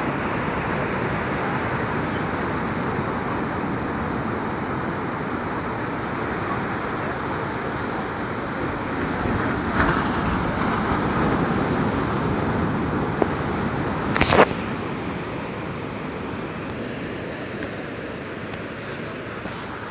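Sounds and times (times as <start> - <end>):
short click: 14.2 - 19.6.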